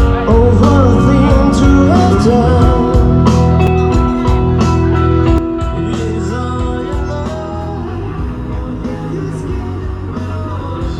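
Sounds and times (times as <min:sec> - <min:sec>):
band song with guitar and drums: 0:00.0 - 0:10.9.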